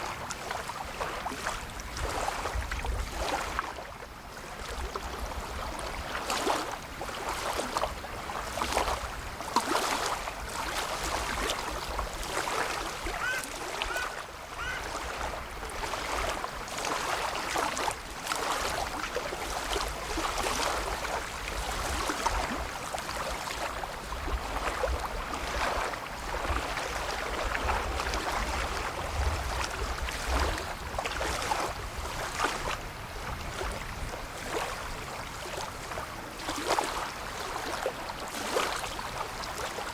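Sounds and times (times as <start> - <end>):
lake water lapping: 0.0 - 39.9
wind on microphone: 0.9 - 3.7, 23.6 - 35.3.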